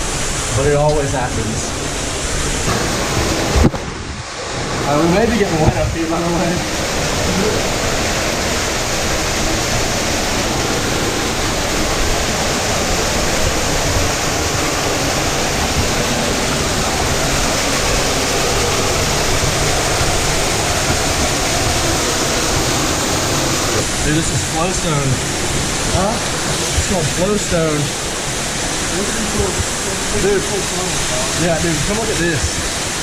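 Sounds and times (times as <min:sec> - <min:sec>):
rushing cave stream and falls: 0:00.0 - 0:33.0.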